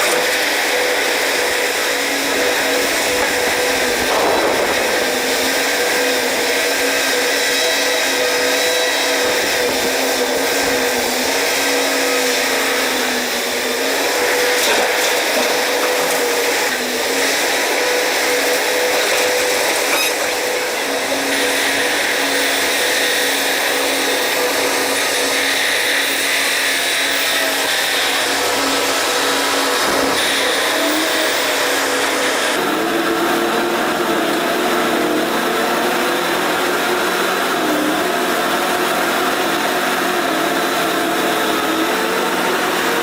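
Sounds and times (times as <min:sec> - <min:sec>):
machine whining: 0:00.0 - 0:43.0.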